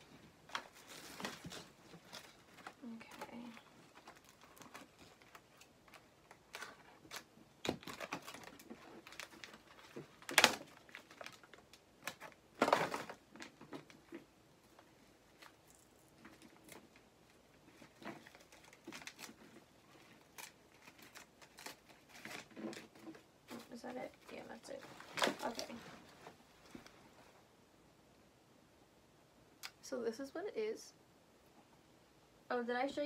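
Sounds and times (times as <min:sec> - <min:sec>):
packaging rustles: 0:00.4 - 0:27.0
plastic packaging crinkling: 0:00.5 - 0:26.9.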